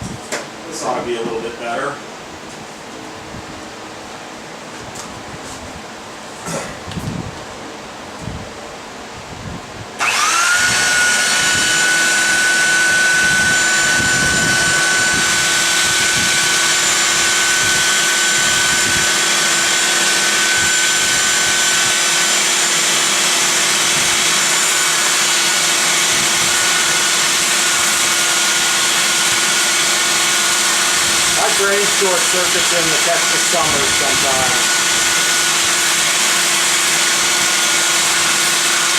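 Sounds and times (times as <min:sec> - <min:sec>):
belt sander whining: 0:10.0 - 0:38.9.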